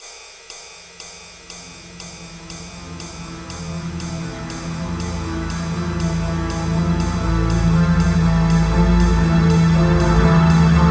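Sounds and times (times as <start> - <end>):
crisp cymbal-like tick: 0.0 - 9.6
low swelling tone: 1.6 - 10.9.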